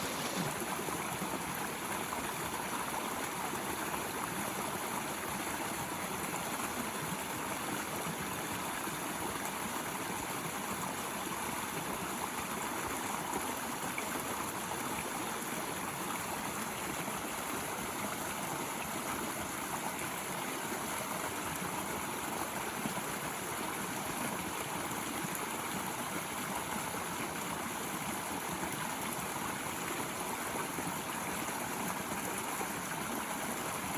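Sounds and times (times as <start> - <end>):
water flowing and gurgling: 0.0 - 6.1.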